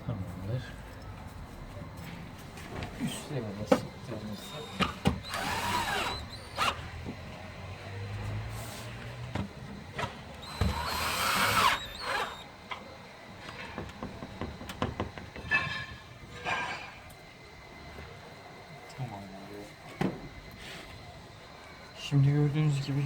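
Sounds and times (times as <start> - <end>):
cordless drill driving screws: 4.3 - 6.9, 10.4 - 12.5.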